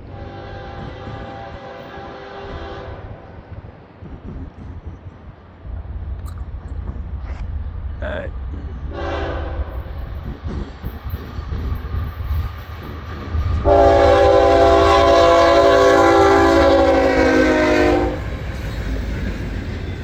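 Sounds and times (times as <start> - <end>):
low rumble of train: 0.0 - 20.0
locomotive air horn chord: 0.1 - 3.1, 8.9 - 9.7, 13.6 - 18.3.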